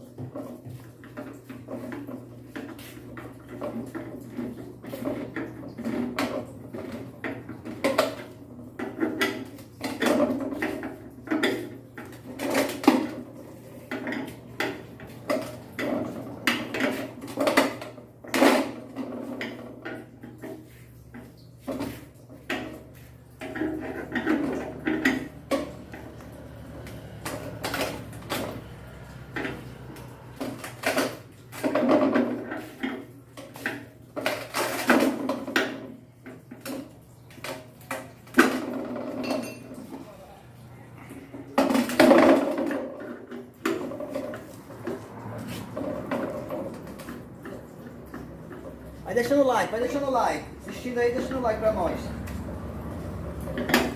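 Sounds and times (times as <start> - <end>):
metal tools clinking and knocking: 39.0 - 39.8.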